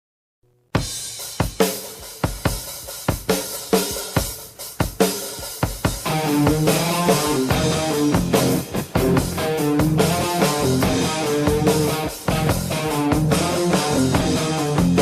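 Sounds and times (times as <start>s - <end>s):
rock drum kit: 0.7s - 15.0s
electric guitars: 6.0s - 15.0s.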